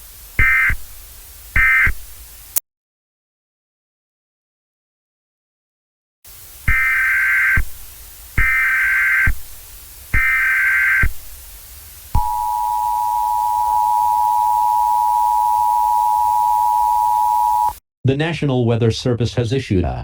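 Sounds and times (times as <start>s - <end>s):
digital data tone bursts: 0.0s - 0.8s, 1.6s - 2.0s, 6.7s - 7.7s, 8.4s - 9.4s, 10.1s - 11.2s, 12.2s - 17.8s
two-tone attention signal: 12.2s - 17.8s.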